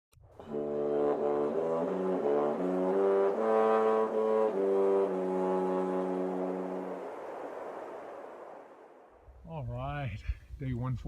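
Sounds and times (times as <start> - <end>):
brass instrument melody: 0.4 - 7.6.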